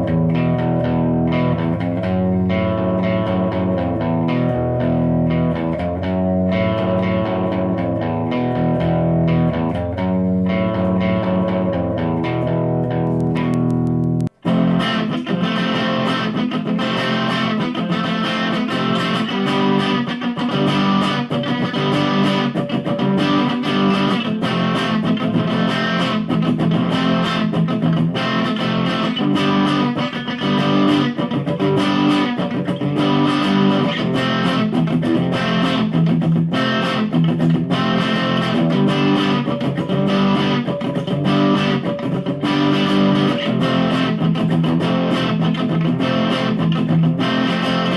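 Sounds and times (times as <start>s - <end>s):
electric guitar chords: 0.0s - 47.9s.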